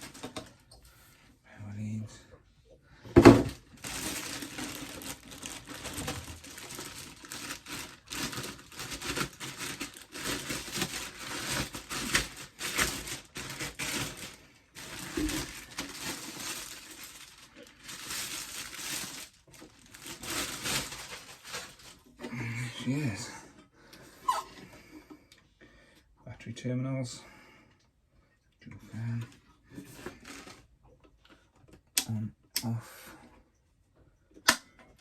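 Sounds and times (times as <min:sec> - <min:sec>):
plastic packaging crinkling: 0:00.0 - 0:00.6, 0:03.4 - 0:22.2, 0:30.0 - 0:30.7.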